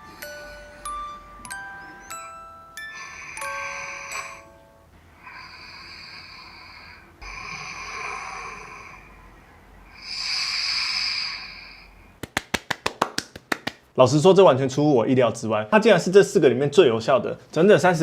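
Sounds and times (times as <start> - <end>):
man breathing loudly rasping: 2.8 - 9.2, 9.9 - 12.0.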